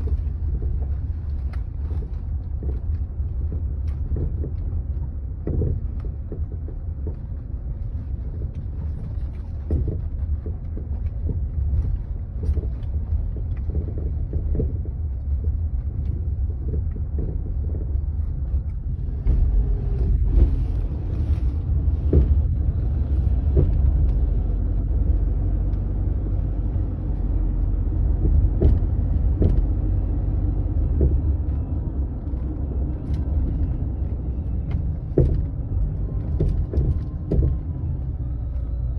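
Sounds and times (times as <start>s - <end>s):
road rumble: 0.0s - 38.9s
suspension knocks: 0.0s - 38.9s.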